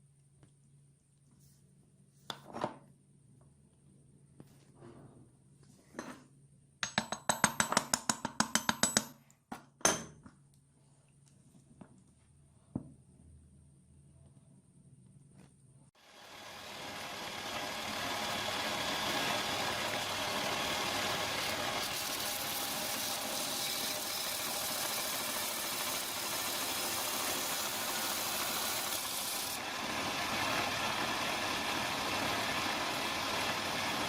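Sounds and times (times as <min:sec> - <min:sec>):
power tool motor running: 0:16.0 - 0:34.0.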